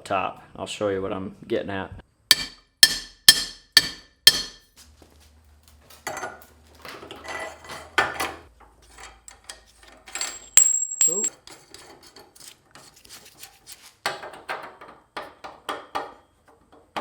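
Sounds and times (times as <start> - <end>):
hammer striking steel: 2.3 - 4.7
metal parts clinking and scraping: 5.8 - 11.9.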